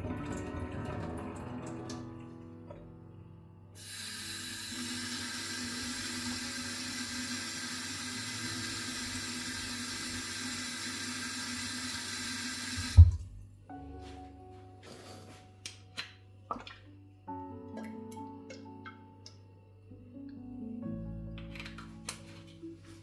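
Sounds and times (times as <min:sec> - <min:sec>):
tap running into sink: 0:12.6 - 0:13.3.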